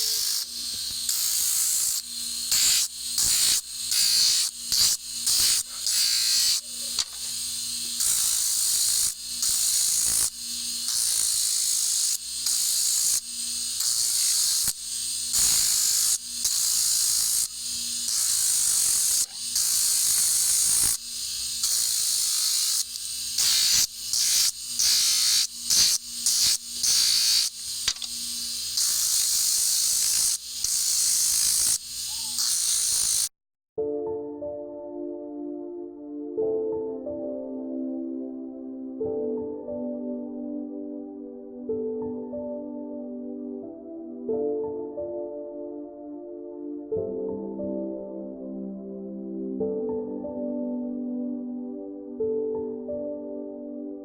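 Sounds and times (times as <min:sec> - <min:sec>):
small motor tool whirring: 0:00.0 - 0:33.3.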